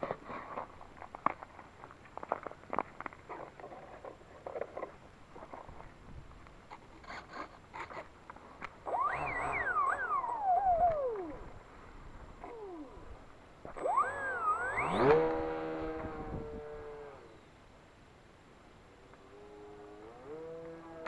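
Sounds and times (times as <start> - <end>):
handling clicks and rustles: 0.0 - 11.4
model airplane motor whine: 8.8 - 11.5, 12.4 - 17.4, 19.3 - 21.0.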